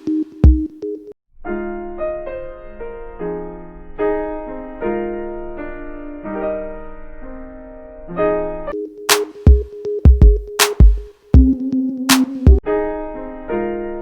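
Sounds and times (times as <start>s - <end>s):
piano playing sustained chords: 1.5s - 9.1s, 11.6s - 14.0s.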